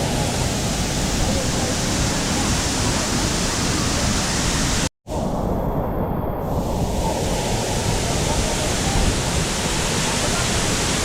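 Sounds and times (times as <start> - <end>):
waterfall roaring: 0.0 - 4.9, 7.0 - 11.0.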